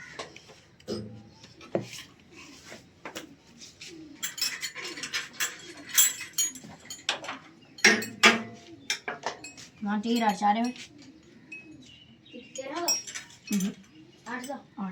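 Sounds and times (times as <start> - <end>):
hand tools tapping on metal: 4.2 - 11.1, 12.6 - 14.6.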